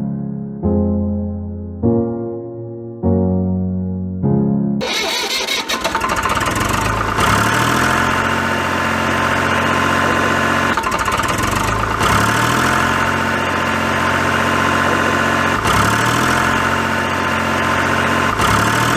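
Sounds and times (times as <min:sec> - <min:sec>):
tractor engine idling: 0:04.8 - 0:18.9.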